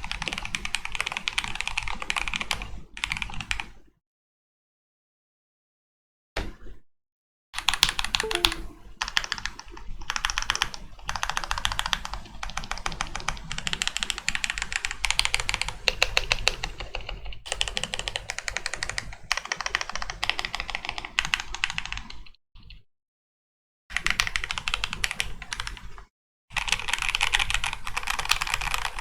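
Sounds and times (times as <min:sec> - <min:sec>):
mechanical keyboard typing: 0:08.2 - 0:08.7, 0:26.6 - 0:29.0.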